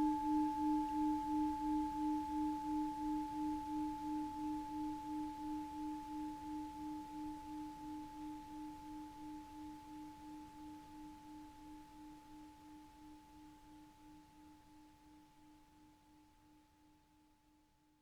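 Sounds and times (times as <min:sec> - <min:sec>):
singing bowl ringing: 0:00.0 - 0:08.6.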